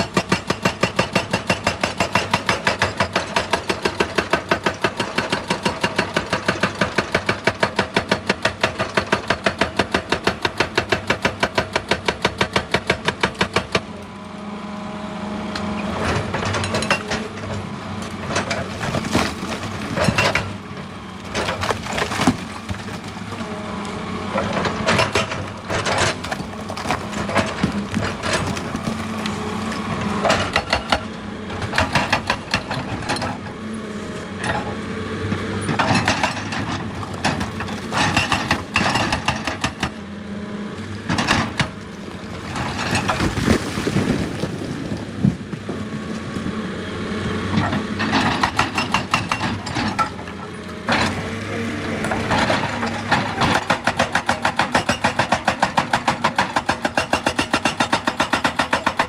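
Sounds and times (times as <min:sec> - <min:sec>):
excavator diesel engine running: 0:00.0 - 0:59.0
rocks knocking and clattering: 0:21.3 - 0:23.4, 0:24.8 - 0:29.4.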